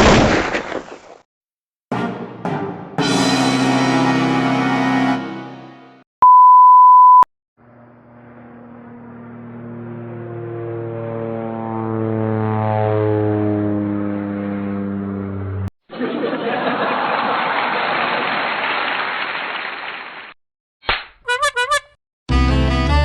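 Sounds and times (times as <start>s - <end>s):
aircraft engine drone passing: 7.6s - 15.7s.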